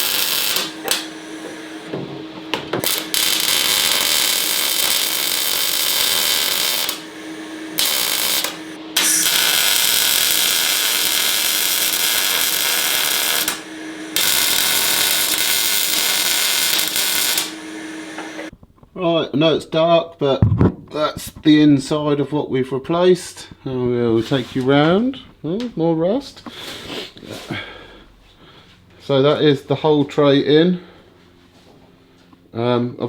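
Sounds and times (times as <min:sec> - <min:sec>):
welder hissing: 0:00.0 - 0:18.5.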